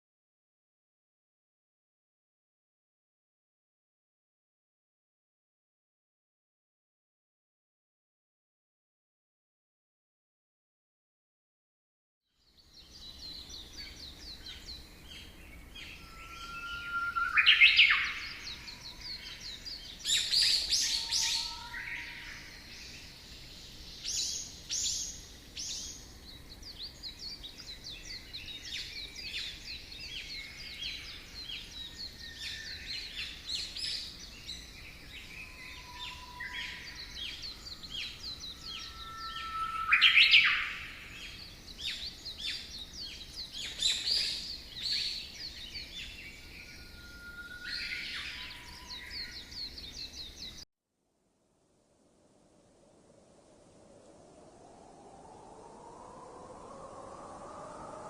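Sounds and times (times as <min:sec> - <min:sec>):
birds chirping in chorus: 0:12.4 - 0:50.6
bird call sweeping upward: 0:12.8 - 0:50.6, 0:53.4 - 0:58.0.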